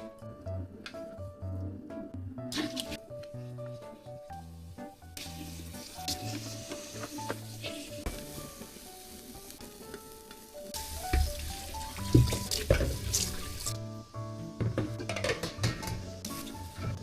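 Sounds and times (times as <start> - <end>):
soft background music: 0.0 - 17.0
food sizzling in pan: 4.0 - 17.0.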